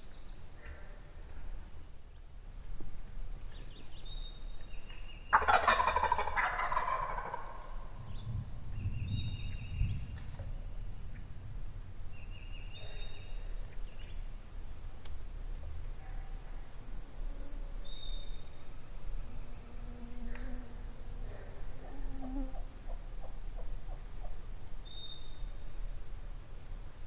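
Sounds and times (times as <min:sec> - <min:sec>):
turkey gobbling: 0:05.3 - 0:07.9, 0:22.5 - 0:24.0.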